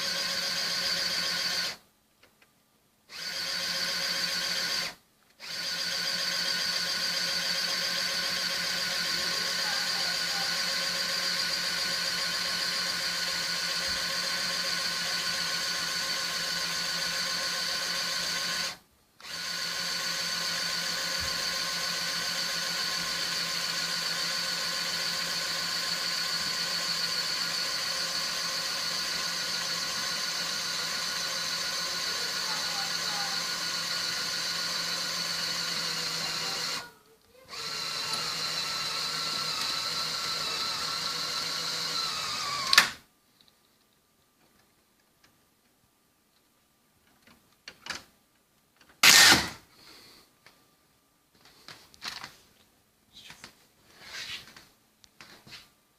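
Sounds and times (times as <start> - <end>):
small electric motor whining: 3.1 - 43.0.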